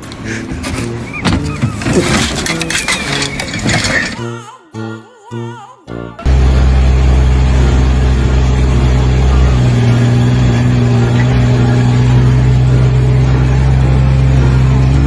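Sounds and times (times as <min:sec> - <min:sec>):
loud engine running: 0:06.3 - 0:15.0.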